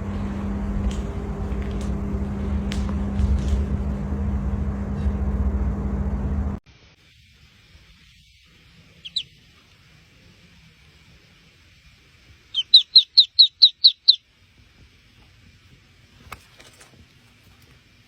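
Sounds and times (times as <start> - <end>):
bird chirping: 8.9 - 9.4, 12.5 - 14.2.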